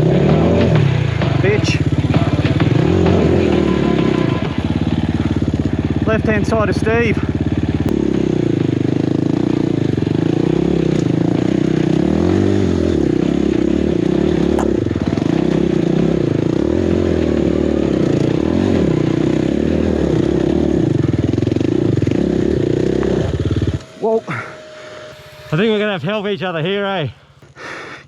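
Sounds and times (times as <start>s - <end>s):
dirt bike engine running: 0.0s - 27.6s.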